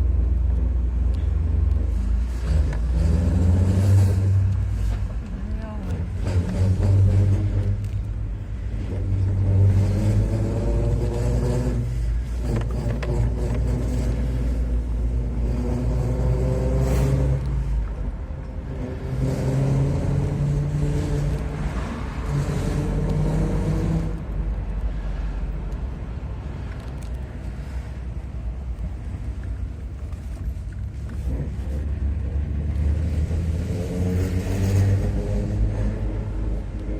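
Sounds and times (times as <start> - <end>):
car engine revving: 1.7 - 25.0, 31.0 - 36.9.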